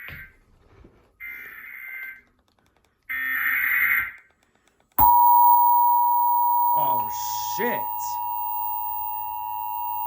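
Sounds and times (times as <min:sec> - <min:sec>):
buzzy digital data tone bursts: 0:05.0 - 0:10.0
two-tone attention signal: 0:05.0 - 0:10.0.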